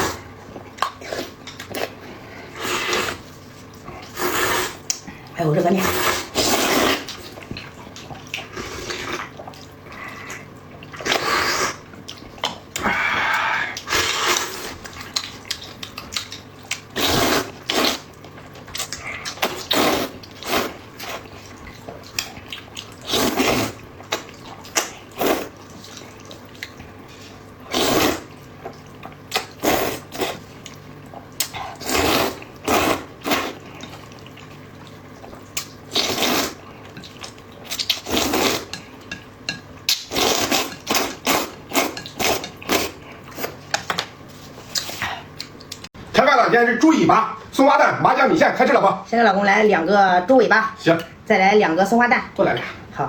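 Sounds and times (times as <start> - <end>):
chewing: 7.0 - 27.5
noodle slurping: 12.8 - 14.9, 16.9 - 18.1, 19.2 - 21.3, 22.9 - 24.3, 27.7 - 28.4, 29.4 - 30.5, 31.7 - 33.9, 35.9 - 36.7, 37.8 - 38.8, 40.0 - 43.6.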